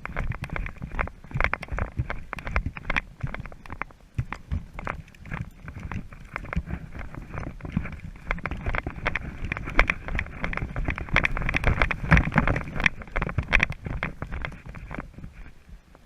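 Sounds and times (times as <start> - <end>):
equipment knocking and rattling: 0.0 - 15.4
footsteps crunching on rough ground: 0.0 - 15.6
wind rumble on microphone: 0.0 - 16.0.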